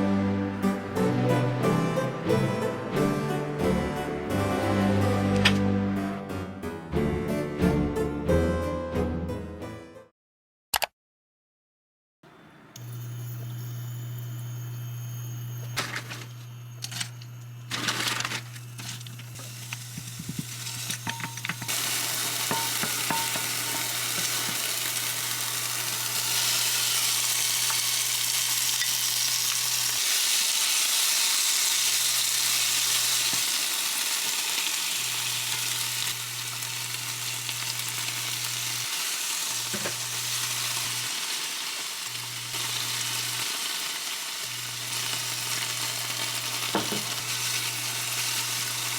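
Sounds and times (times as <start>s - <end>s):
food sizzling in a pan: 12.8s - 48.9s.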